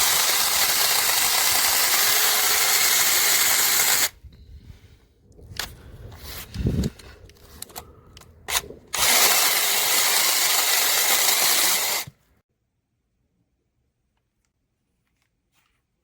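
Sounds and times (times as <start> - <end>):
battery chainsaw running: 0.0 - 4.1, 9.0 - 12.1.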